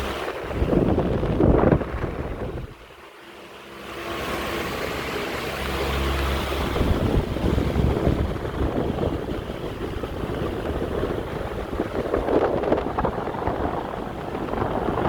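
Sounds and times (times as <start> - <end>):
fan fluttering rumble: 0.0 - 15.0.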